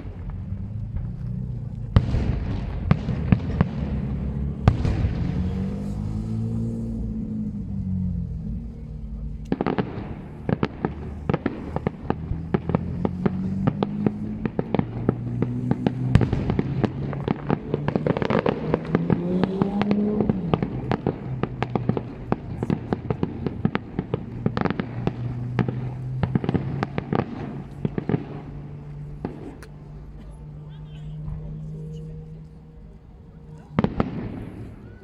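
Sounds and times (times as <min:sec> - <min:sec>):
fireworks bangs and crackling: 0:00.0 - 0:35.0
low wavering pitched sound: 0:29.9 - 0:35.0.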